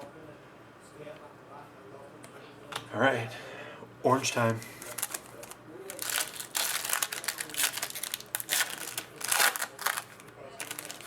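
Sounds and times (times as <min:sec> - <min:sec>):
plastic wrapper tearing and crinkling: 0:04.8 - 0:11.0.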